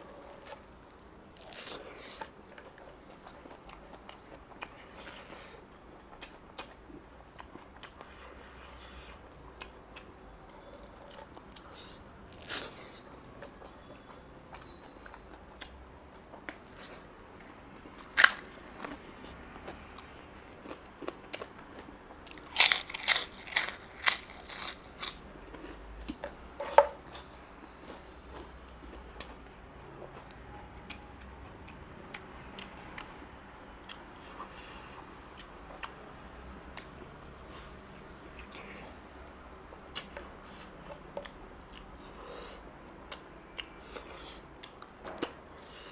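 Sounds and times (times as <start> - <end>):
quiet chewing: 0.0 - 36.0, 36.7 - 45.9
loud food crunches: 12.3 - 12.9, 18.0 - 19.0, 22.2 - 26.2.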